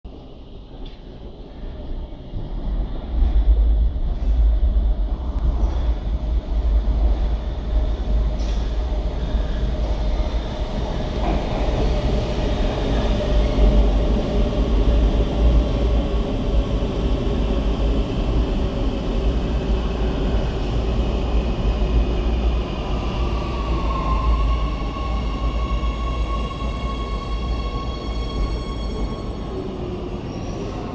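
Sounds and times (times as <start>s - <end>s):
metro train rumble: 0.1s - 30.9s.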